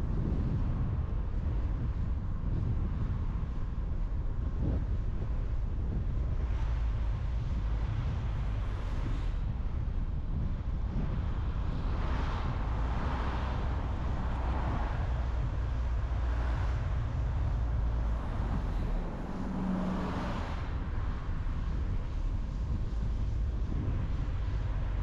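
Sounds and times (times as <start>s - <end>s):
car road rumble and tyre hiss: 0.0s - 25.0s
low hum: 0.0s - 25.0s.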